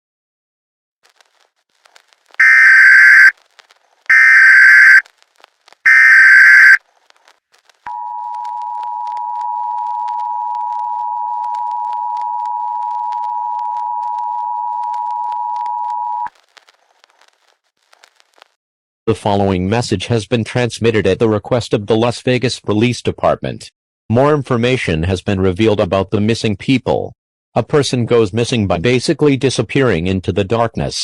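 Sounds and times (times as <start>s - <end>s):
two-tone attention signal: 2.4s - 3.3s, 4.1s - 5.0s, 5.9s - 6.8s
digital data bursts: 2.4s - 3.4s, 4.1s - 5.1s, 5.8s - 6.8s.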